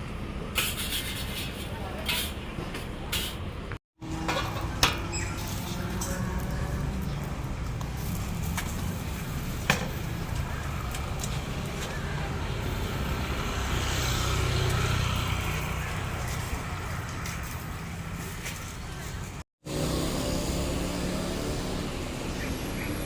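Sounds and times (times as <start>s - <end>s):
road traffic: 0.0s - 23.0s
vehicle passing: 4.0s - 18.7s, 19.7s - 23.0s.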